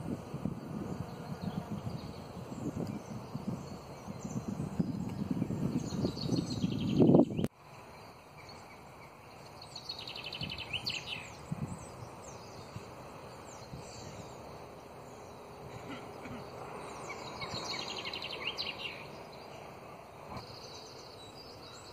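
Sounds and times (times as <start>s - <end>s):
low rumbling microphone noise: 0.0s - 8.6s, 9.2s - 21.8s
songbirds singing: 0.0s - 21.9s.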